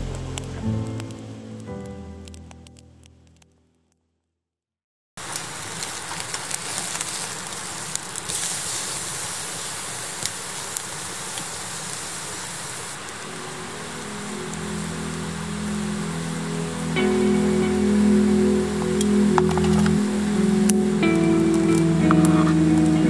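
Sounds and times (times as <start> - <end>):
music: 0.0 - 3.6, 13.2 - 23.0
wood fire crackling: 0.0 - 3.6, 5.2 - 23.0.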